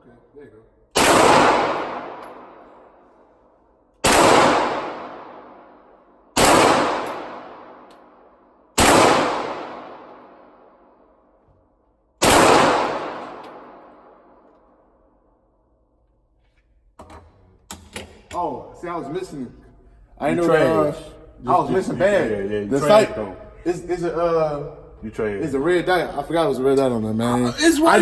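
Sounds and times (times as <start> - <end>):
gunshots with reverberation: 0.9 - 3.4, 4.0 - 11.1, 12.2 - 15.0.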